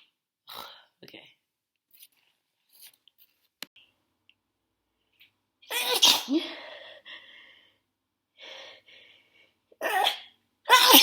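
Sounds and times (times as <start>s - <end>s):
person sneezing: 5.7s - 6.6s, 9.8s - 11.0s.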